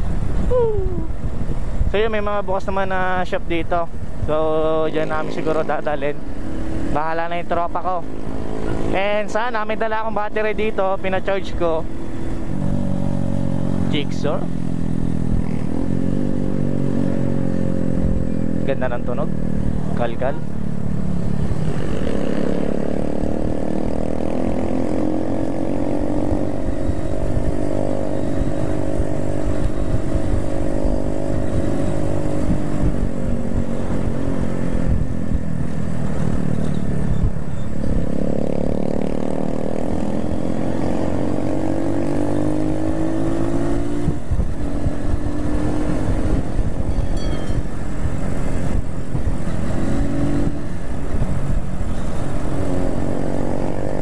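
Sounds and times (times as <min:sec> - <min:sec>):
wind rumble on microphone: 0:00.0 - 0:05.3, 0:21.1 - 0:54.0
motorcycle engine accelerating: 0:07.8 - 0:09.2, 0:11.8 - 0:54.0.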